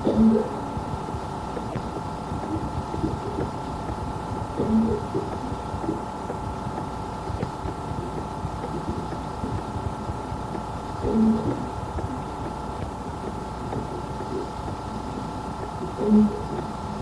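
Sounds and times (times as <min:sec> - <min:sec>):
steady hum and rumble: 0:00.0 - 0:17.0.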